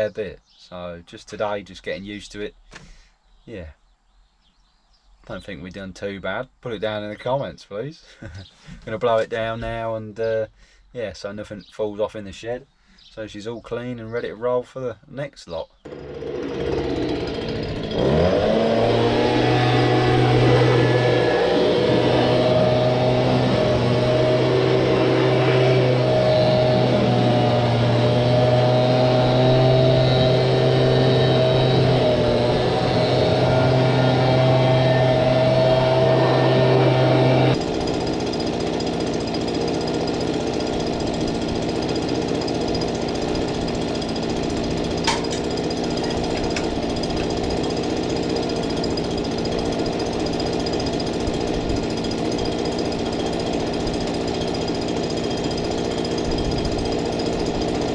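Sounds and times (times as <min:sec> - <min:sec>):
blower running: 0:15.9 - 0:57.9.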